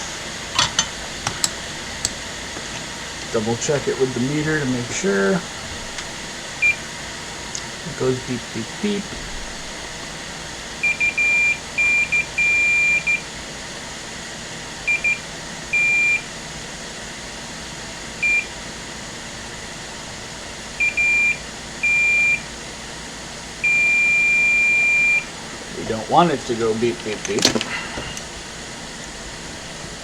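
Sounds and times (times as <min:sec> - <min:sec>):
multimeter continuity beeps: 0:06.6 - 0:06.8, 0:10.8 - 0:13.3, 0:14.9 - 0:16.3, 0:18.2 - 0:18.5, 0:20.8 - 0:22.5, 0:23.6 - 0:25.3.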